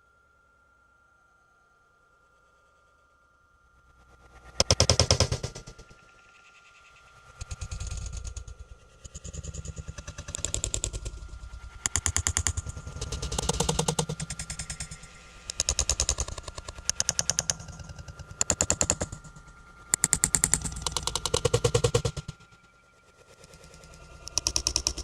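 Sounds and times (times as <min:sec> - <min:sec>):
rapid rattling clatter: 0:20.0 - 0:22.4.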